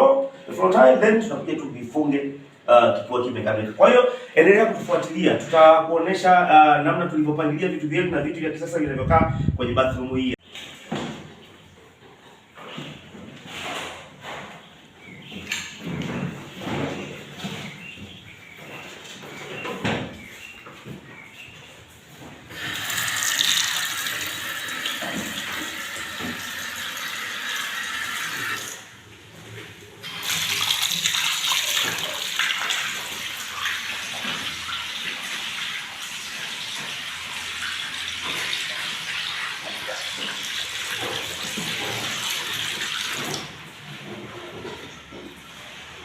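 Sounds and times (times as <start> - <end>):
water running from a tap: 22.5 - 28.9, 30.0 - 43.5.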